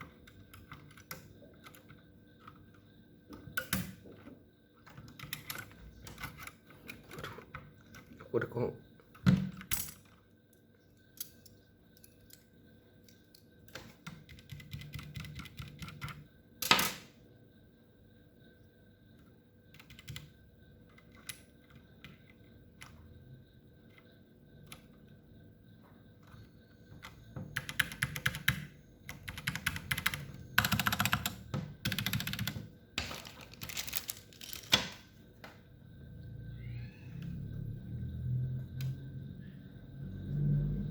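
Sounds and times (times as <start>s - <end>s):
mechanical keyboard typing: 0.0s - 2.6s, 4.9s - 8.4s, 13.7s - 16.8s, 19.7s - 23.0s, 27.0s - 34.8s.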